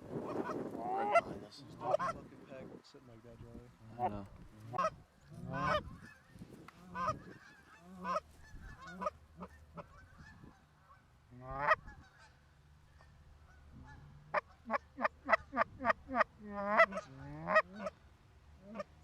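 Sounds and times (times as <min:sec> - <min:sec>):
goose honking: 0:00.2 - 0:02.2, 0:03.9 - 0:18.0, 0:18.6 - 0:19.0.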